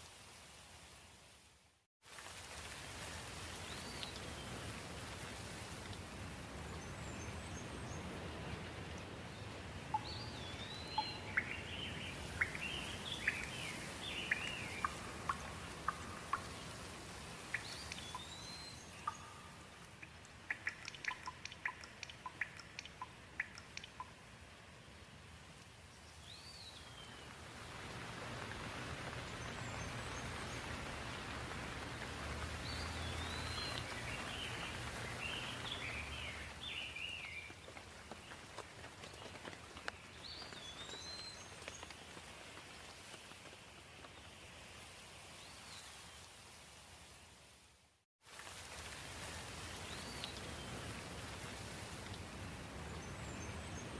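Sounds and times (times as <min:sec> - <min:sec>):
rain and water hiss: 0:00.0 - 0:53.9
rushing outdoor noise: 0:02.1 - 0:53.9
bird chirp: 0:09.4 - 0:16.8, 0:17.4 - 0:24.2, 0:32.6 - 0:37.7.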